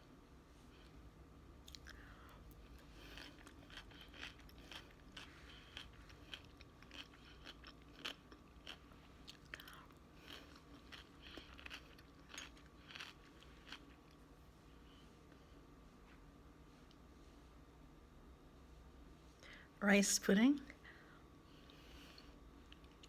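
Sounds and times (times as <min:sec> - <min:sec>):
person chewing crunchy food: 0:01.6 - 0:14.3, 0:21.6 - 0:23.0.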